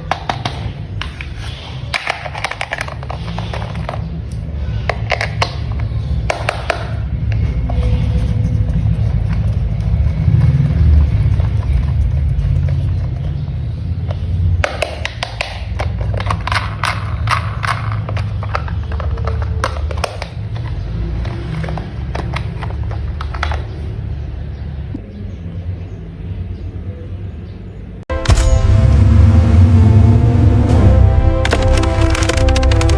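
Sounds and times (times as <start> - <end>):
plastic toy parts snapping: 0.0 - 7.0, 14.6 - 23.8
background music with low drone: 28.1 - 32.9.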